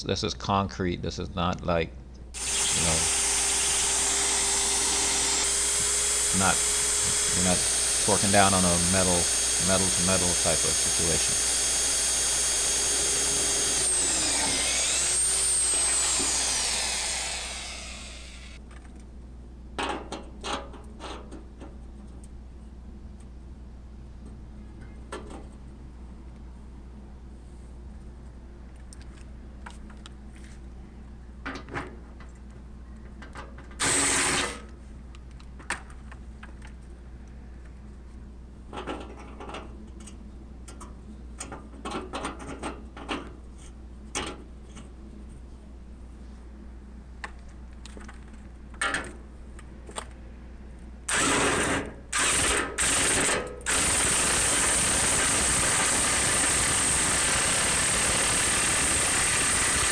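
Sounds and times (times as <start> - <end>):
power driver running: 2.4 - 18.6, 33.8 - 34.6, 52.2 - 59.9
tool handling clicks and knocks: 38.7 - 44.9.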